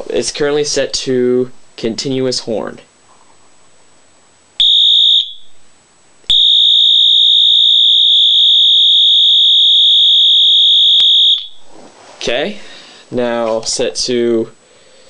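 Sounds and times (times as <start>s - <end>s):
fire alarm horn tone: 4.6s - 5.5s, 6.3s - 11.6s.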